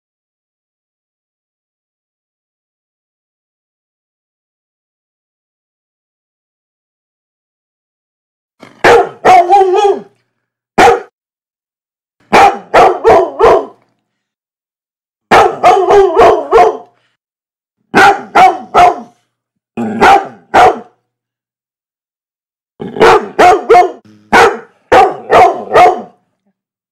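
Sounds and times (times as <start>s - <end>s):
dog barking: 8.7s - 10.2s, 10.8s - 11.2s, 12.3s - 13.8s, 15.3s - 17.0s, 17.9s - 19.2s, 19.8s - 21.0s, 22.9s - 26.2s.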